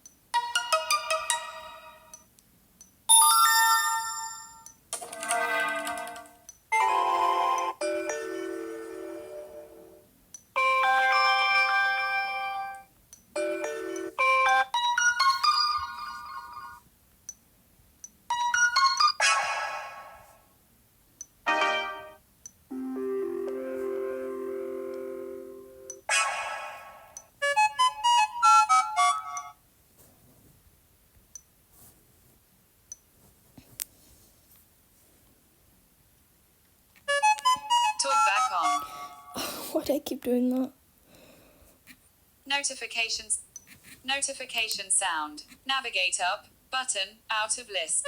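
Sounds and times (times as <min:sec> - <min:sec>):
phone notification tones: 0:03.1 - 0:09.7, 0:13.4 - 0:16.8, 0:21.5 - 0:26.7
bright chord ringing: 0:21.5 - 0:26.0
short melodic notes: 0:21.5 - 0:26.0.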